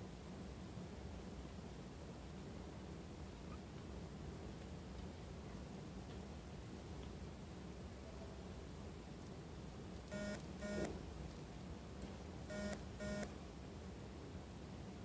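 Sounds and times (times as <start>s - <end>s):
short electronic beeps: 10.1s - 10.9s, 12.5s - 13.3s.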